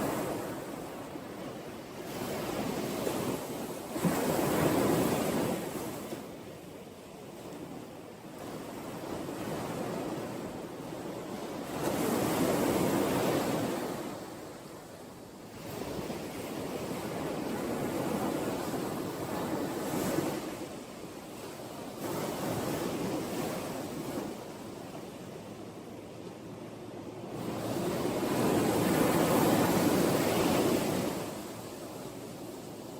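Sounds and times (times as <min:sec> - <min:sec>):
ocean waves breaking: 0:15.5 - 0:32.9.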